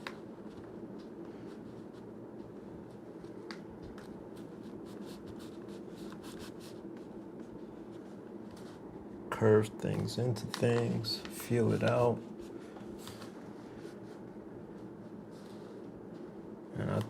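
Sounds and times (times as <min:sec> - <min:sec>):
light clicks and taps: 0:09.8 - 0:12.0.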